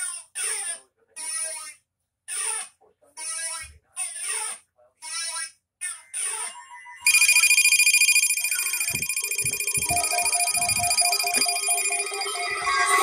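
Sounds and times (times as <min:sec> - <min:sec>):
harsh steady alarm tone: 0:07.0 - 0:13.0
data bursts: 0:07.1 - 0:13.0
lower pulsing beeps: 0:07.1 - 0:13.0.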